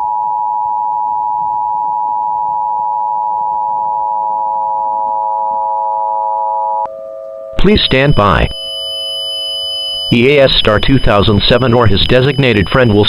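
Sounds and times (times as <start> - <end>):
lower steady tones: 0.0 - 13.0
steady high alert tones: 3.4 - 13.0.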